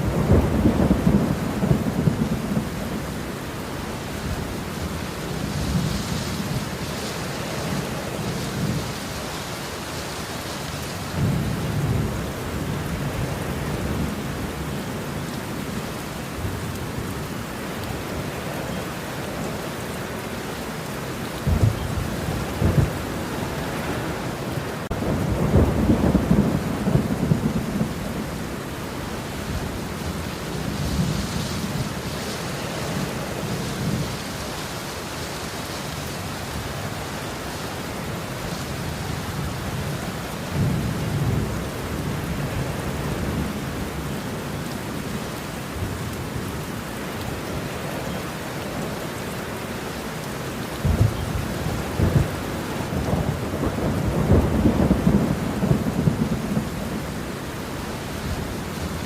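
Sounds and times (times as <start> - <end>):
thunder rumbling: 0.0 - 3.3, 21.4 - 34.4, 50.8 - 59.0
rain hiss: 0.0 - 59.0.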